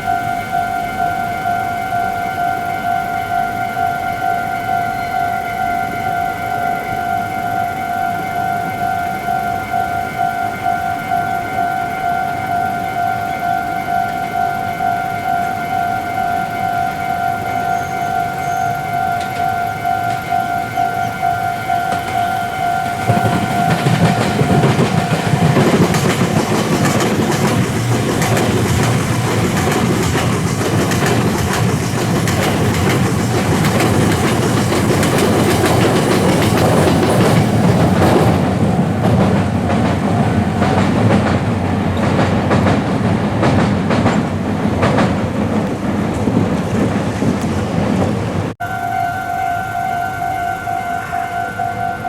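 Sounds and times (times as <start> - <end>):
train wheels clicking over rail joints: 0.0 - 48.6
level crossing warning tones: 0.0 - 52.0.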